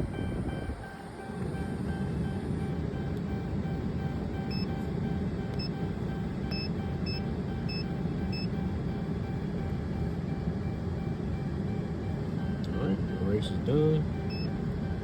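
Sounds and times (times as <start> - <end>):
faint rapidly pulsing tone: 0.0 - 15.0.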